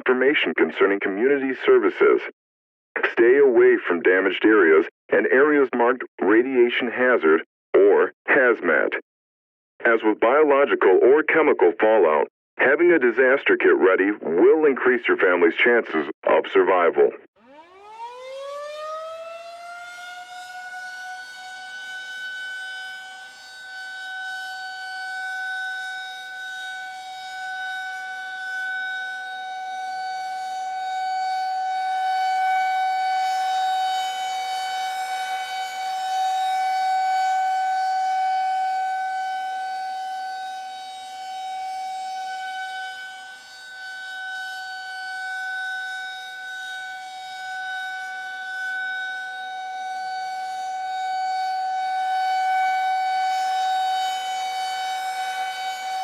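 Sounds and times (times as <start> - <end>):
air-raid siren steady tone: 17.2 - 56.0.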